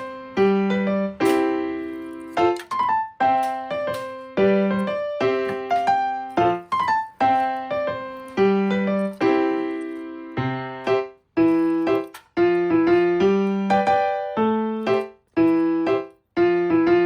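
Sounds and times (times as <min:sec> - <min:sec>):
gentle piano melody: 0:00.0 - 0:17.0.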